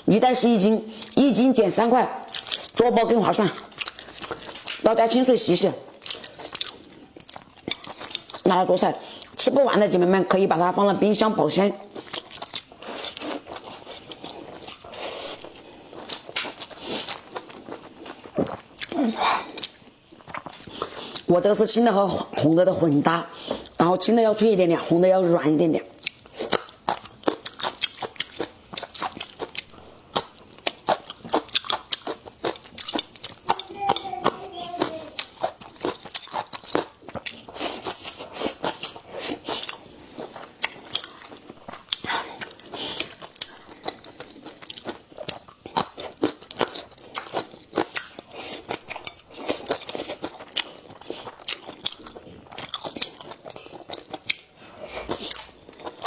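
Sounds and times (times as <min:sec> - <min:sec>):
crunching chili peppers: 0:26.1 - 0:56.0.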